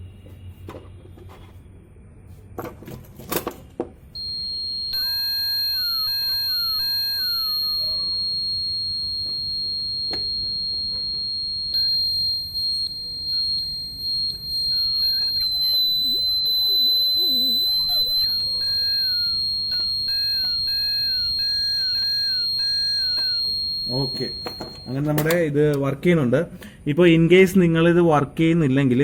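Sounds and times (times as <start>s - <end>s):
high-pitched electronic buzzer tone: 4.2s - 25.5s.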